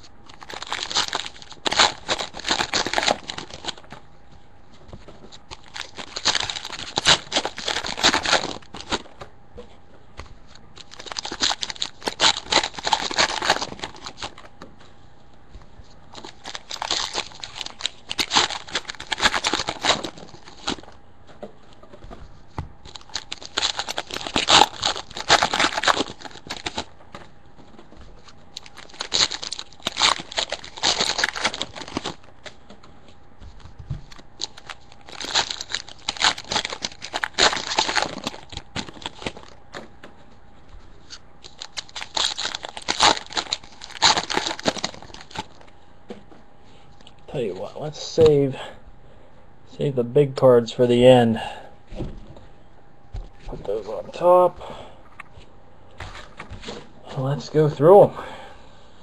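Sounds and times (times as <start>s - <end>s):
foil wrappers tearing and crinkling: 0.3s - 4.0s, 5.0s - 9.2s, 10.8s - 14.5s, 16.1s - 21.0s, 22.8s - 32.6s, 33.7s - 39.9s, 41.0s - 45.7s.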